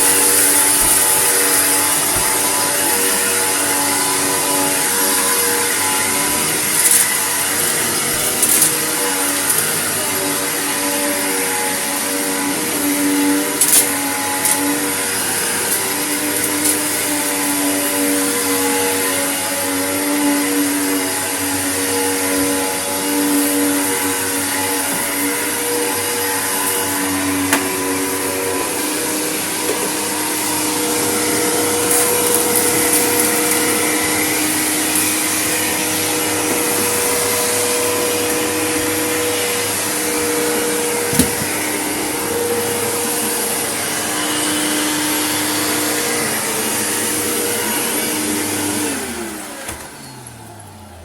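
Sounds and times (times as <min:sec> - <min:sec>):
vacuum cleaner running: 0:00.0 - 0:51.0.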